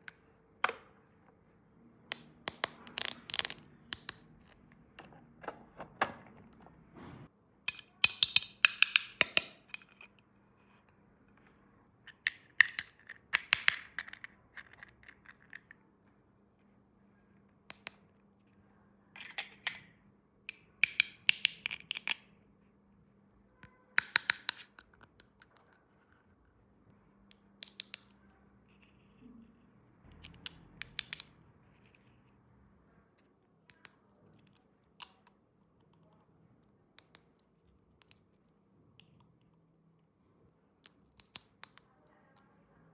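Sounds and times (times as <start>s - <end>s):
plastic toy pieces clicking: 2.1s - 4.3s, 7.7s - 10.0s, 12.1s - 15.7s, 20.5s - 22.2s, 24.0s - 25.5s, 30.2s - 31.3s.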